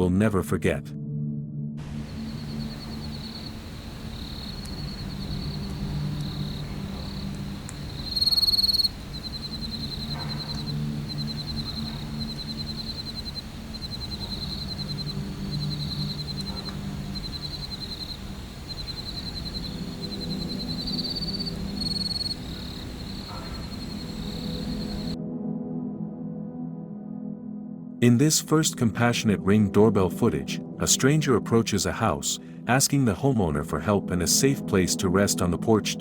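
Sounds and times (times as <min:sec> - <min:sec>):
crickets chirping: 0:01.8 - 0:25.2.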